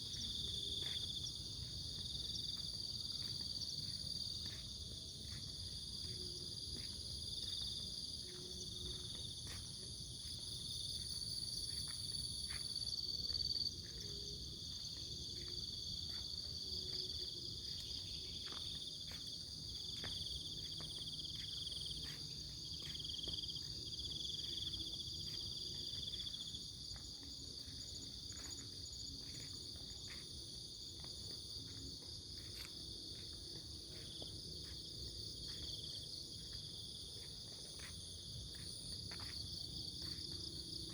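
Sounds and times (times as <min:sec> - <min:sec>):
crickets chirring: 0:00.0 - 0:40.9.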